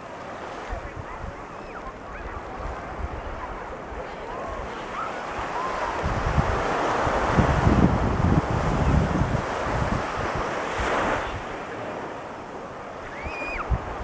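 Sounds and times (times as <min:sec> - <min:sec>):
waves washing on beach: 0:00.0 - 0:14.0
wind buffeting microphone: 0:00.6 - 0:11.6, 0:13.0 - 0:14.0.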